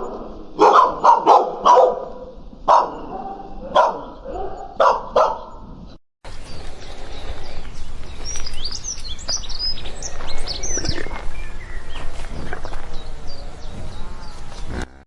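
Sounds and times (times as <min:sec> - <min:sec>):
dog barking: 0:00.0 - 0:05.7
birds chirping: 0:00.0 - 0:15.0
outdoor noise: 0:00.0 - 0:15.0.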